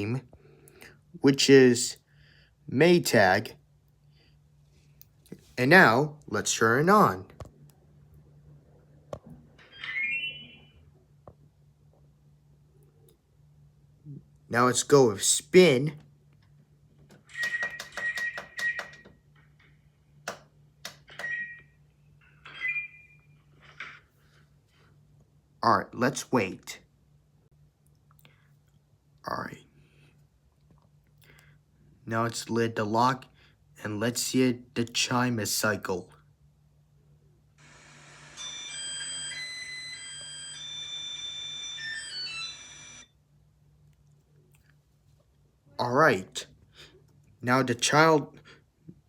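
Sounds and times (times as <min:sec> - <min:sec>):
faint steady hum: 0:00.0 - 0:49.0
washing machine beeping chime: 0:38.4 - 0:43.1.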